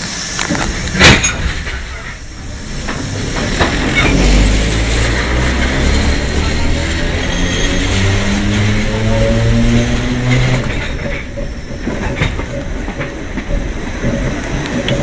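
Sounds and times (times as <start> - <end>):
loud hiss-like burst: 0.0 - 4.9
rail vehicle rumbling past: 0.0 - 15.0.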